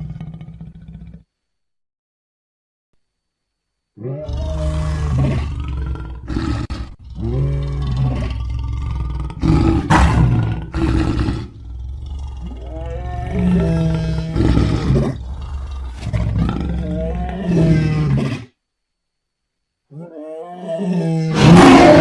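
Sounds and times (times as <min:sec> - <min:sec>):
dinosaur roars and growls: 0:04.0 - 0:18.5, 0:19.9 - 0:22.0.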